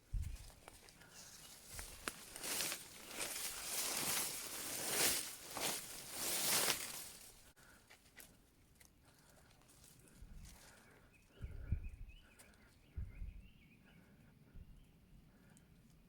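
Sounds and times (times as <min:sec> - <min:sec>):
footsteps on a trail: 0:00.0 - 0:11.1.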